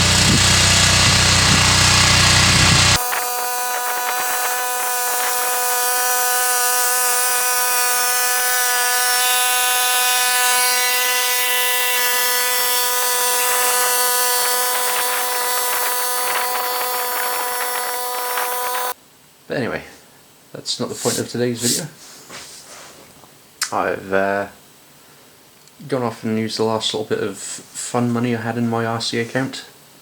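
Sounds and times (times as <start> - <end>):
small motor whining: 0.0 - 19.0
hiss: 3.0 - 8.1, 13.2 - 19.0.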